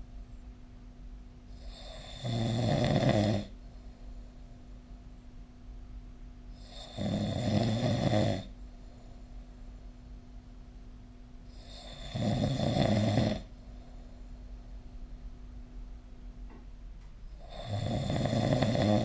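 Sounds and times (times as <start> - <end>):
faint steady hum: 0.0 - 19.0
person snoring: 1.5 - 3.6, 6.6 - 8.6, 11.5 - 13.5, 17.3 - 19.0.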